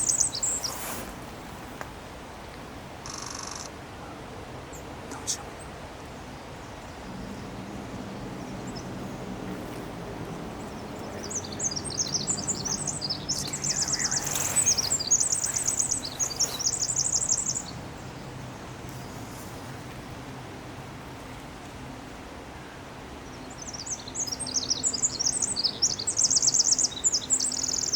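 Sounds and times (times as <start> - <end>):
birds chirping and trilling: 0.0 - 1.1, 5.5 - 19.4, 23.3 - 27.9.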